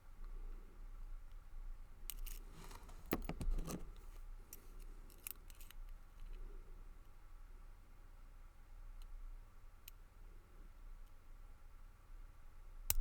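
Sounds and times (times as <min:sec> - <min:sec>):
lock pick clicking in padlock: 0:02.1 - 0:04.0.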